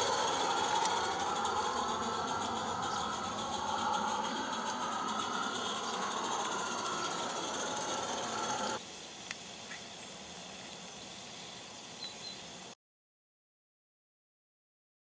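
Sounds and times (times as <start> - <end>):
steam locomotive exhaust clatter: 0.0 - 10.9
steam hissing: 0.0 - 12.8.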